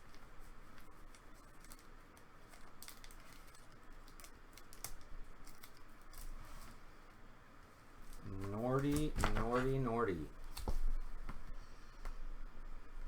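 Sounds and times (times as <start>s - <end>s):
trading cards being handled: 8.1s - 11.4s.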